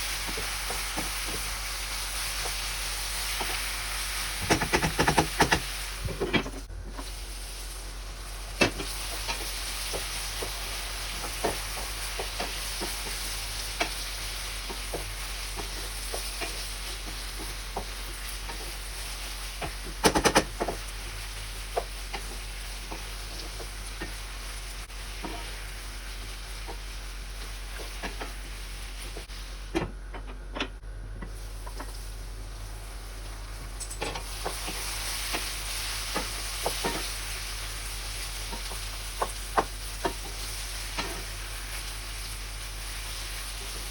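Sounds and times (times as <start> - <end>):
food sizzling in a pan: 0.0 - 29.8, 31.2 - 43.9
utensil scraping a pan: 25.1 - 25.8.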